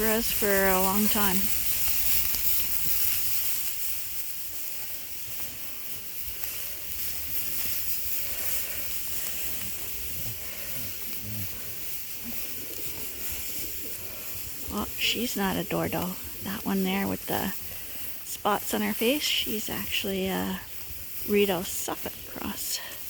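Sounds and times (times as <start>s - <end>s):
steady hiss: 0.0s - 23.0s
sheep making low sounds: 8.4s - 15.0s.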